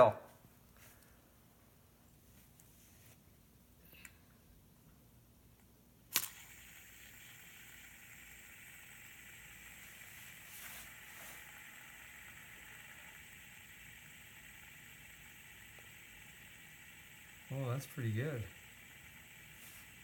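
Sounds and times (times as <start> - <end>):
fidget spinner whirring: 6.1 - 20.0.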